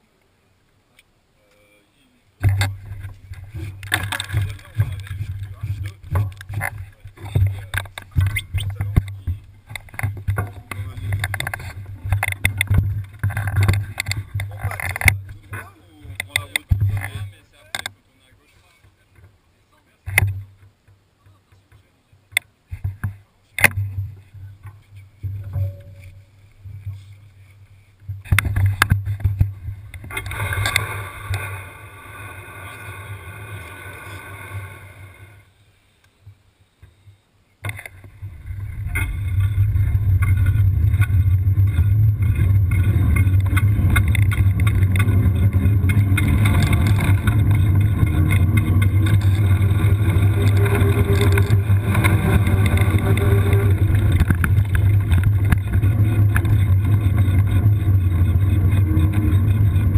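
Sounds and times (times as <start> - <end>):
wheelchair wheels rumbling on trail: 2.4 - 19.4, 22.8 - 35.5, 37.6 - 59.9
faint rising drone: 38.2 - 59.9.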